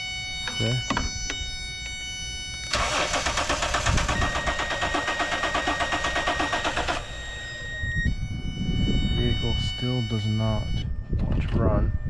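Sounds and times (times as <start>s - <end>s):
engine cranking on starter: 2.7s - 7.8s.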